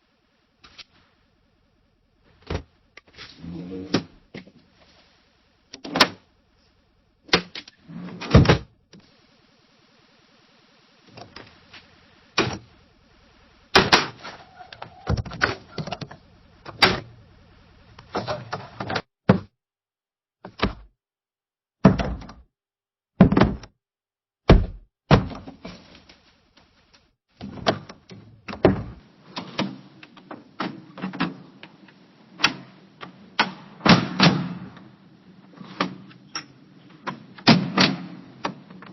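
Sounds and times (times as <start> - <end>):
windows rattling and sliding: 7.4 - 8.7, 27.4 - 38.9.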